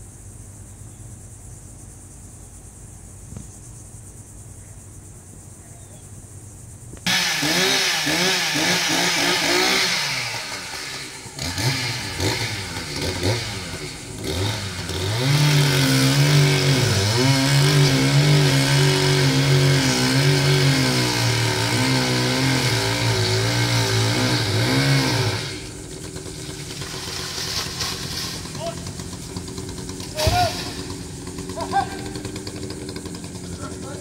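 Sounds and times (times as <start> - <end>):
chainsaw cutting wood: 7.1 - 33.9.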